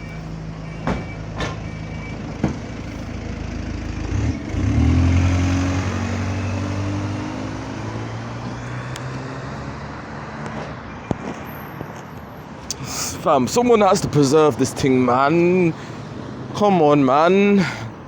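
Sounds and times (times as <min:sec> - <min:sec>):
bus diesel engine pulling away: 0:00.0 - 0:11.8.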